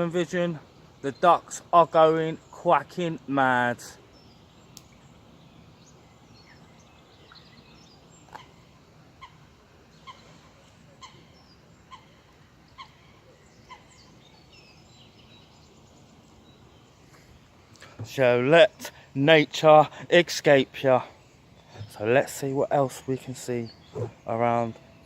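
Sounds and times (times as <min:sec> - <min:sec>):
small birds chirping: 0:00.0 - 0:25.0
ducks quacking faintly: 0:08.2 - 0:14.2.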